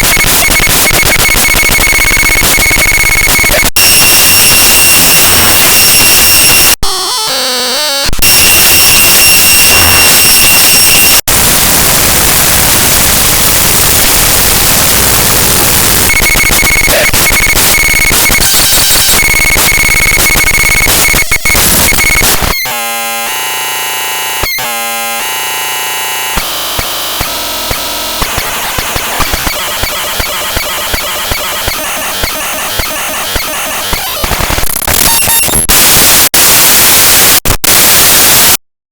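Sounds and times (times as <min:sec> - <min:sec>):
harsh digital noise: 0:00.0 - 0:38.6
buzzing: 0:05.4 - 0:36.1
high steady tones: 0:12.6 - 0:34.3
scattered clicks: 0:26.4 - 0:35.7.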